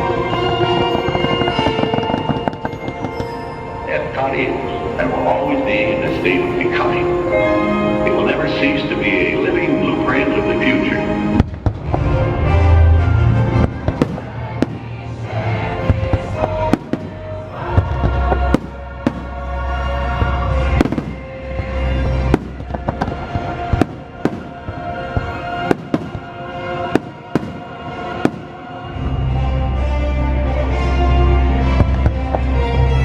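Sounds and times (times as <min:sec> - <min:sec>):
fireworks bangs: 0:00.0 - 0:03.9, 0:10.8 - 0:12.2, 0:13.4 - 0:29.2, 0:31.6 - 0:32.6.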